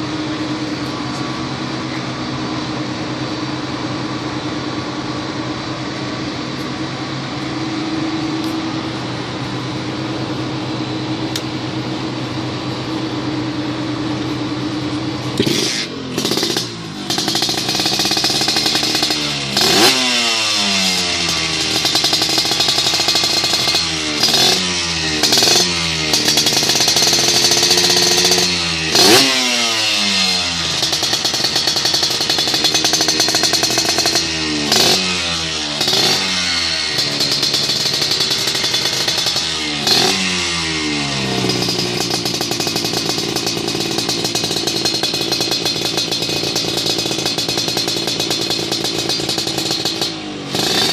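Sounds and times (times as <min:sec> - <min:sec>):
two-stroke engine revving: 0:13.4 - 0:50.9.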